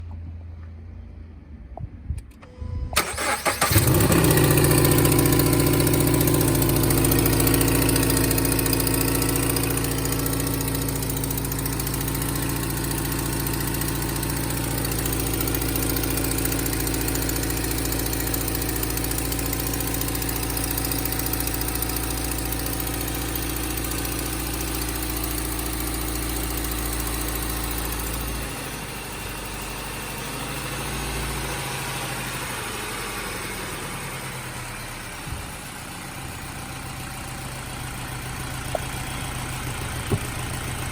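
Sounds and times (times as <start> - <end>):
car engine cranking and idling: 0.0 - 40.9
exhaust leak tapping: 38.6 - 40.9.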